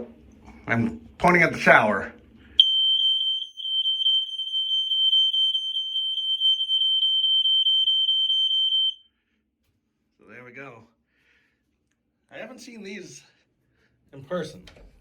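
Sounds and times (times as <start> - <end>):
smoke alarm horn: 2.6 - 9.1.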